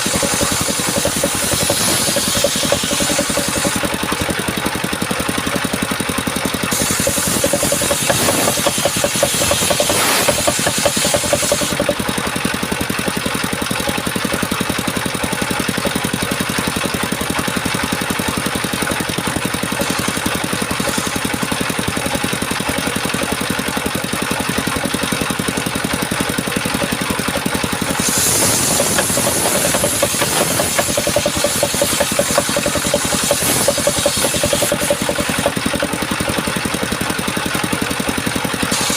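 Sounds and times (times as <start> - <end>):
saw blade cutting wood hiss: 0.0 - 4.2, 6.7 - 11.9, 27.8 - 36.0
sawmill engine running: 0.0 - 38.9.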